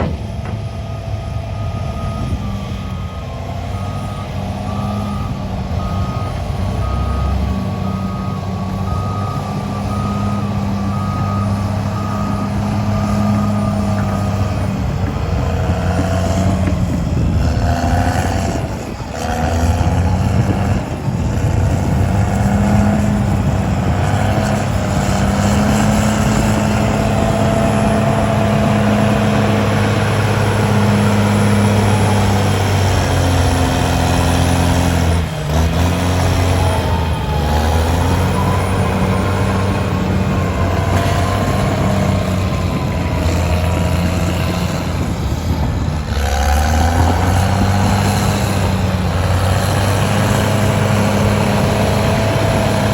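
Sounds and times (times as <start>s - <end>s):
reversing alarm beeping: 0.0s - 16.5s, 24.0s - 45.6s
heavy diesel machinery running: 0.0s - 52.9s.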